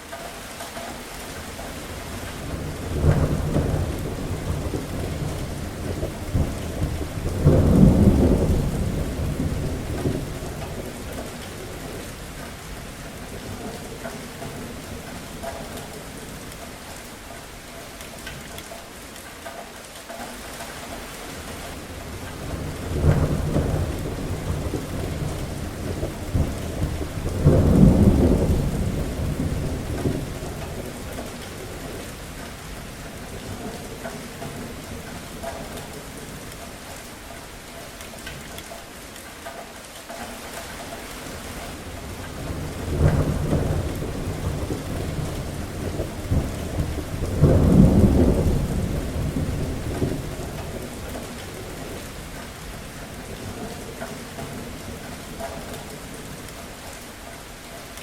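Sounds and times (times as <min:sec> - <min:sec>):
steady rain: 0:00.0 - 0:58.0
thunder rumbling: 0:01.5 - 0:16.6, 0:21.4 - 0:36.6, 0:41.1 - 0:56.5.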